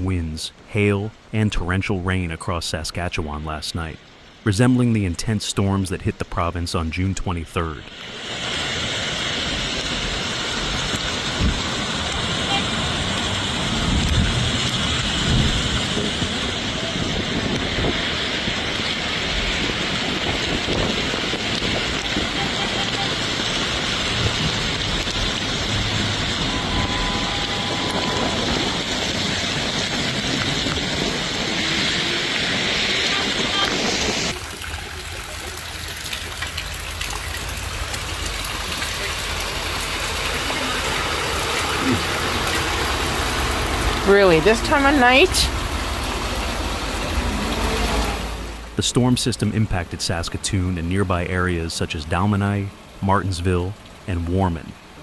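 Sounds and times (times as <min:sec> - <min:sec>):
heavy rain pouring: 0:00.0 - 0:55.0
rushing water: 0:00.0 - 0:55.0
vehicle engine humming: 0:06.0 - 0:53.2
thunder rumbles: 0:09.4 - 0:34.9.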